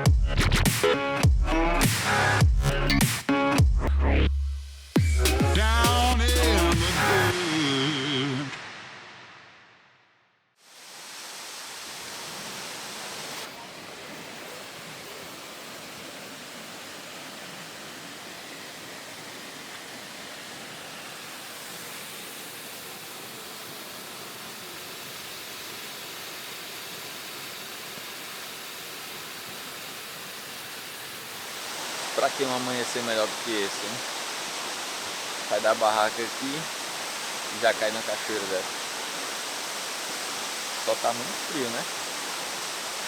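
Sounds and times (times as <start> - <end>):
electronic music: 0.0 - 7.7
waterfall rushing: 5.3 - 9.4, 10.6 - 43.0.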